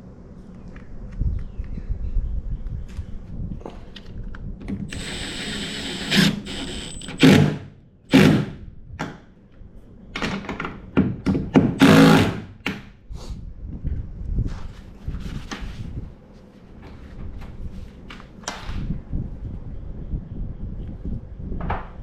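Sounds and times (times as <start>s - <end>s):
power drill running: 4.9s - 8.5s, 11.8s - 12.4s.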